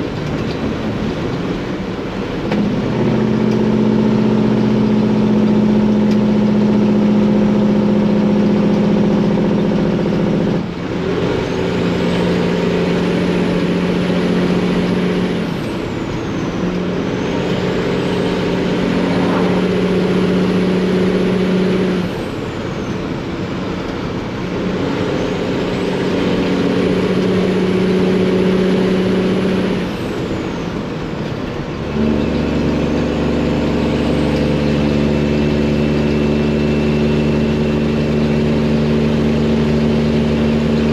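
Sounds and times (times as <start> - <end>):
diesel truck engine upshifting: 0.0 - 40.9
faint turbo whistle: 16.1 - 20.2.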